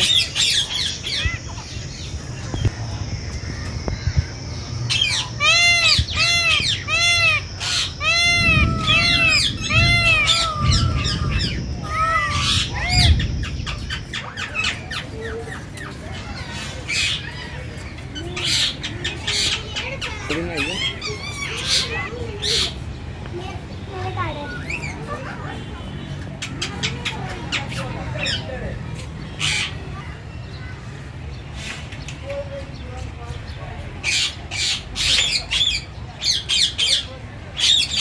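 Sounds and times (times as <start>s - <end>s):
small birds chirping: 0.0s - 38.0s
peafowl honking calls: 4.9s - 15.0s.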